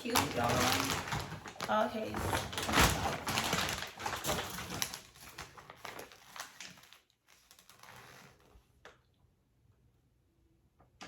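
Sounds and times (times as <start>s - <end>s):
packaging rustling and crinkling: 0.0s - 8.7s.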